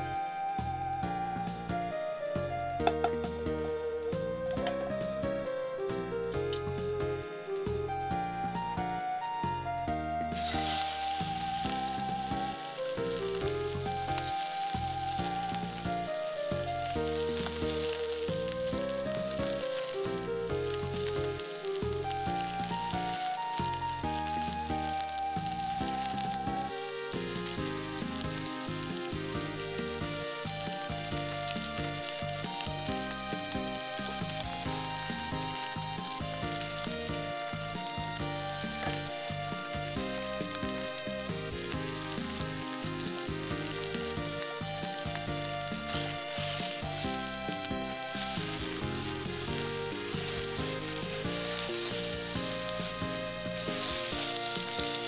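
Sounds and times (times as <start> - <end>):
background music melody: 0.0 - 55.0
food sizzling in hot oil: 10.2 - 55.0
stirring in a pan: 25.6 - 55.0.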